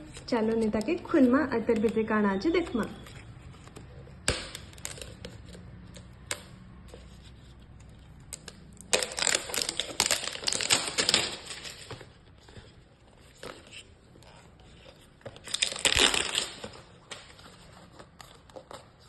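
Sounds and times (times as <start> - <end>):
wrapping crinkling and tearing: 7.4 - 12.6, 13.2 - 19.0.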